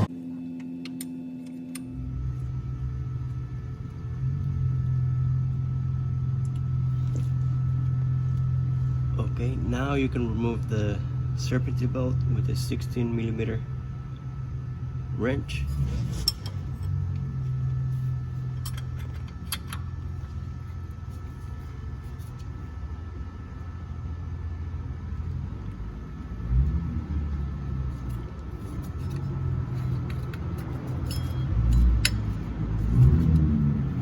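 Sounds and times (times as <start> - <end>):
wrench clinking on metal: 29.8 - 32.4.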